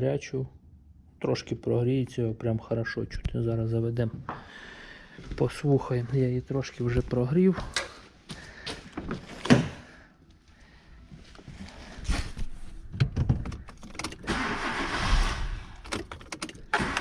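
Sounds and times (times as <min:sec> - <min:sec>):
starter motor cranking: 0:13.6 - 0:17.0.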